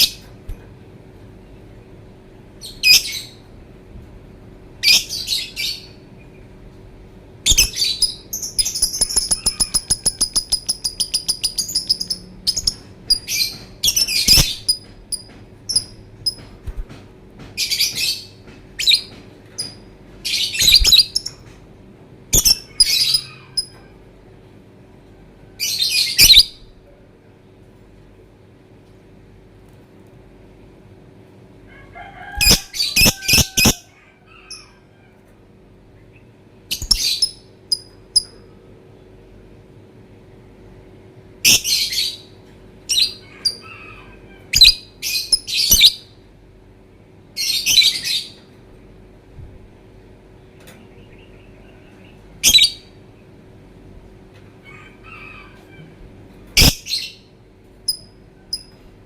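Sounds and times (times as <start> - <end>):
bird chirping and trilling: 4.8 - 6.0, 7.4 - 16.4, 17.6 - 21.4, 22.3 - 23.8, 25.6 - 26.7, 32.4 - 33.8, 36.7 - 38.4, 41.4 - 42.3, 51.0 - 52.9.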